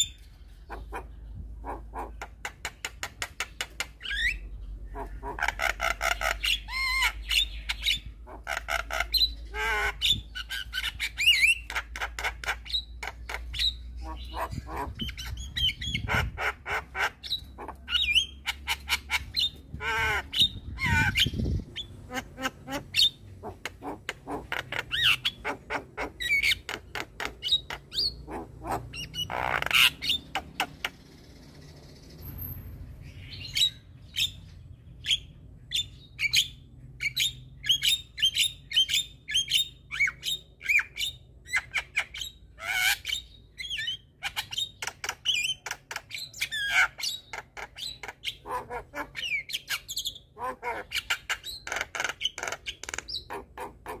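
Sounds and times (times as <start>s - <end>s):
myna chattering and squawking: 0.0s - 31.0s, 40.0s - 54.0s.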